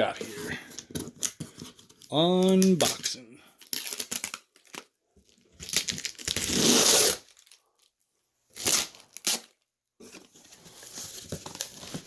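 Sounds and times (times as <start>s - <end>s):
packaging rustling: 0.9s - 6.5s
packaging ripping: 2.6s - 5.0s, 5.6s - 7.6s, 8.6s - 9.6s.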